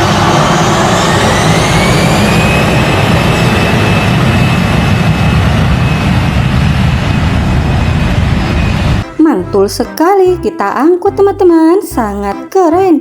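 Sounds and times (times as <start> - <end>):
jet engine rumble and whine: 0.0 - 9.2.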